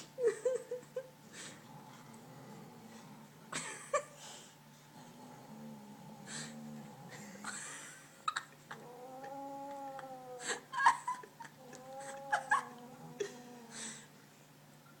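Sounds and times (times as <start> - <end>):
cat yowling: 11.7 - 13.3.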